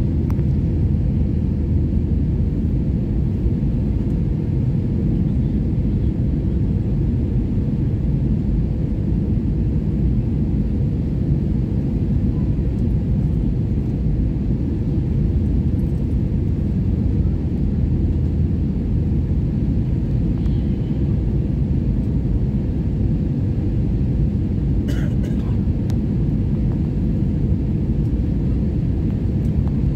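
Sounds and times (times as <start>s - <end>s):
airliner cabin rumble: 0.0s - 29.9s.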